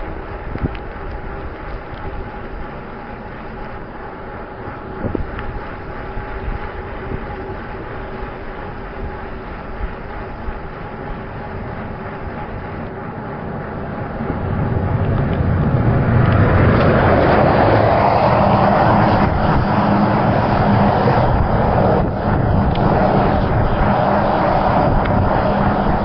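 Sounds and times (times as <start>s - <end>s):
road noise: 0.0s - 26.0s
wind: 0.0s - 26.0s.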